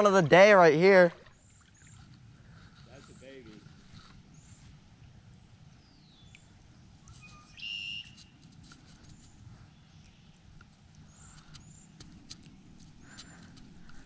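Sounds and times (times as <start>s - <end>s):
low rumble of wind: 0.0s - 14.0s
birds chirping and whistling: 4.0s - 4.8s, 5.8s - 8.3s.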